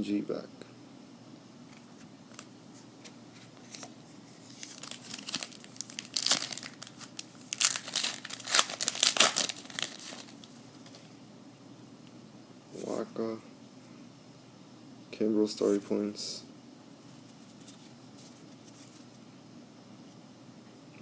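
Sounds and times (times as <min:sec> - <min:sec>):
wrapper tearing and crinkling: 0:04.5 - 0:11.0.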